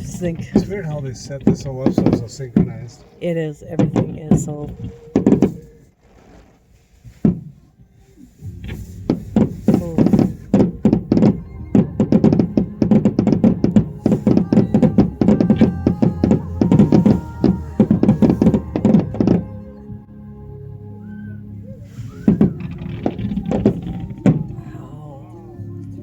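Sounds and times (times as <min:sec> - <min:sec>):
fireworks bangs: 0:00.0 - 0:06.6, 0:08.4 - 0:19.6, 0:21.9 - 0:24.7
music playing: 0:08.4 - 0:26.0.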